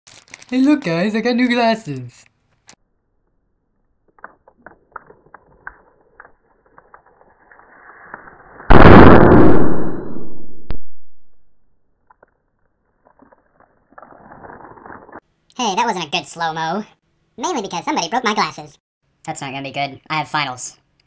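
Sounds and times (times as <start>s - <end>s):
loud explosion blast: 8.7s - 11.4s
sharp crack: 8.7s - 11.5s.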